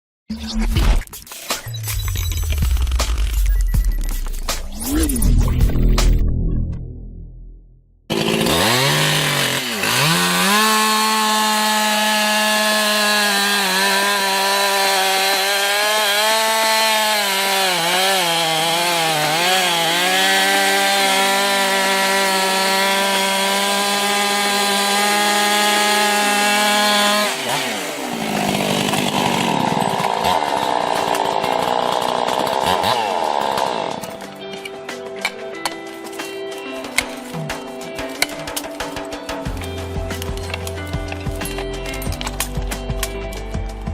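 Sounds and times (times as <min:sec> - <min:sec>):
chainsaw revving: 0:08.1 - 0:34.3.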